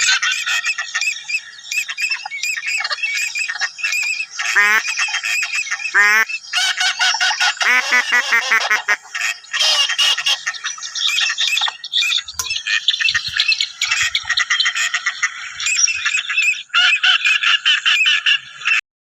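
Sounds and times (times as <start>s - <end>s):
waterfowl flock calling: 0.0s - 18.8s.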